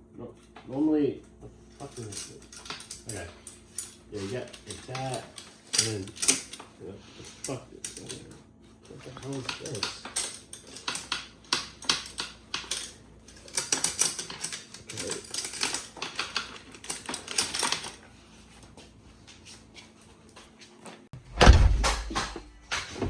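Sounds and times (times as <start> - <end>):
bicycle chain clicking and rattling: 1.8 - 8.3, 8.9 - 18.0
loud thud: 21.2 - 23.0.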